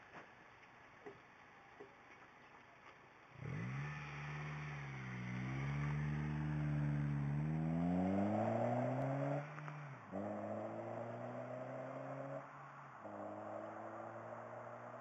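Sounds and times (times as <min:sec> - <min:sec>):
car engine accelerating: 0:03.4 - 0:15.0.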